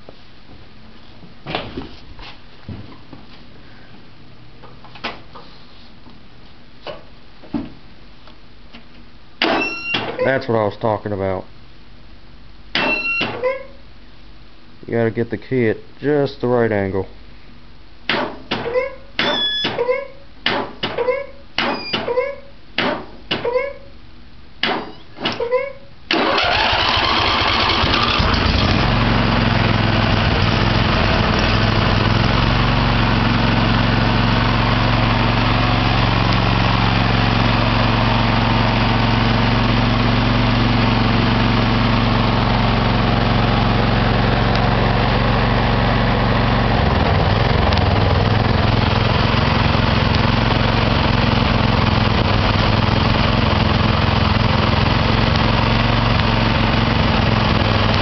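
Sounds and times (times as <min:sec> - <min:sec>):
lawn mower engine idling: 0:26.1 - 0:58.0.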